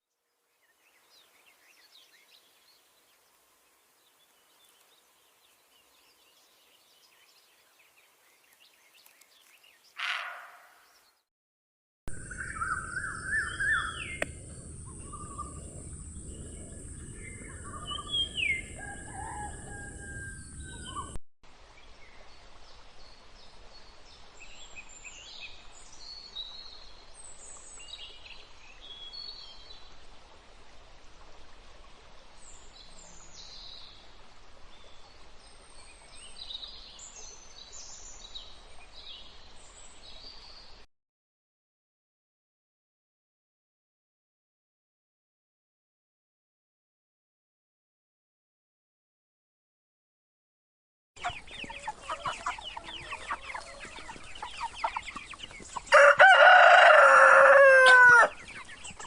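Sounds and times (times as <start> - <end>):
birds chirping: 12.1 - 21.2, 51.2 - 59.0.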